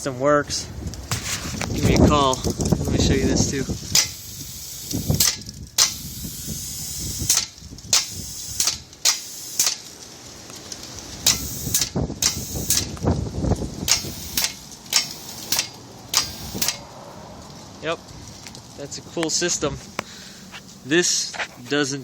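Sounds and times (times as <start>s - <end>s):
compressor engine rough noise: 0.5s - 10.0s, 11.1s - 17.5s
short sharp air hisses: 3.9s - 9.9s, 11.2s - 12.9s, 13.9s - 16.8s.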